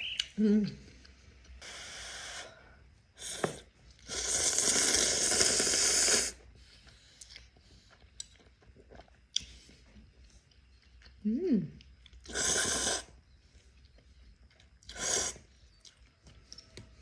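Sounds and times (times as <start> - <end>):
faint eating sounds: 0.0 - 17.0
airy mouth airflow while eating: 1.6 - 8.2, 12.2 - 13.3, 14.8 - 15.6.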